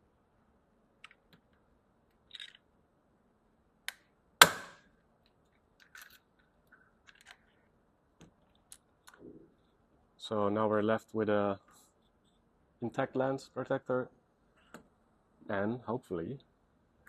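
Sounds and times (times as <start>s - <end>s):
sharp crack: 3.9s - 4.9s.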